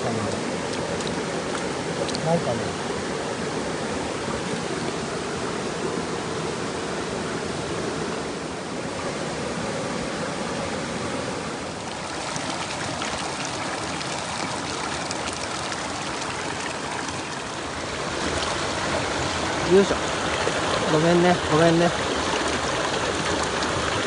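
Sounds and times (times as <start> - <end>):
stream rushing over rocks: 0.0 - 24.0.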